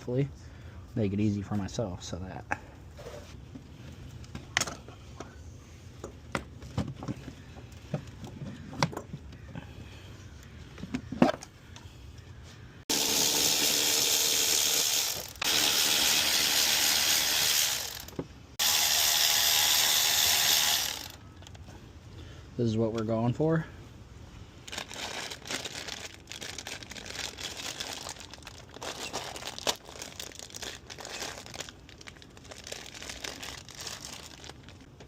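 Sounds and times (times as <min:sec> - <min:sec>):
ratchet wrench running: 0:12.9 - 0:21.2.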